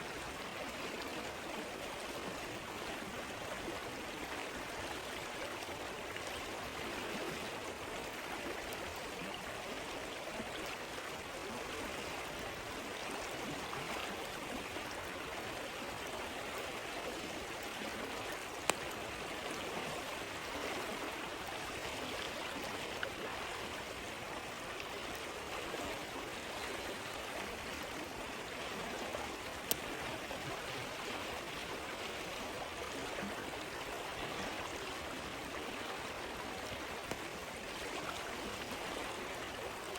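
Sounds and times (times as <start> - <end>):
stream water babbling: 0.0 - 39.9
campfire pops: 18.6 - 19.0, 29.5 - 30.0.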